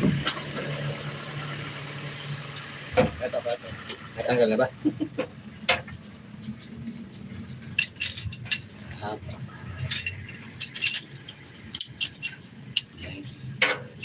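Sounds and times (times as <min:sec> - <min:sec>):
hand tools clinking on metal: 0:07.6 - 0:14.0.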